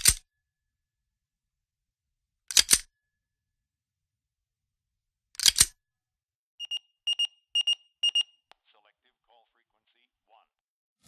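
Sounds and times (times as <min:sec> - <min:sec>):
short high electronic beeps: 0:06.6 - 0:08.4.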